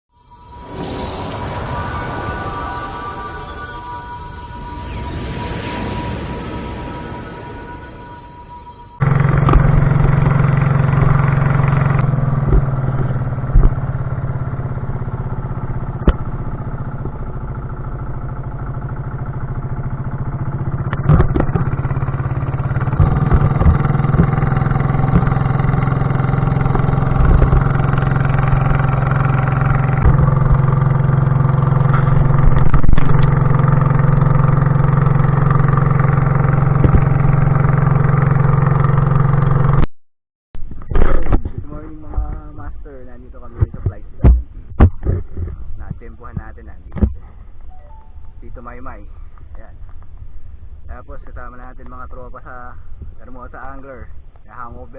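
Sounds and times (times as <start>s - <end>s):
small engine humming: 0.1s - 39.8s.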